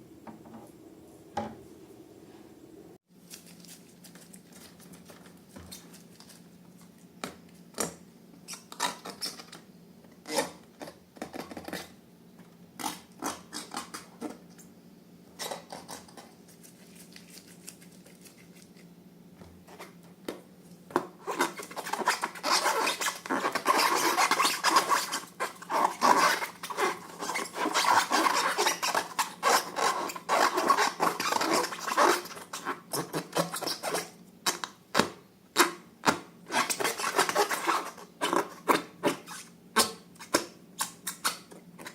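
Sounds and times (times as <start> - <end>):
slime rubbing and crackling: 21.2 - 34.6, 36.5 - 41.9.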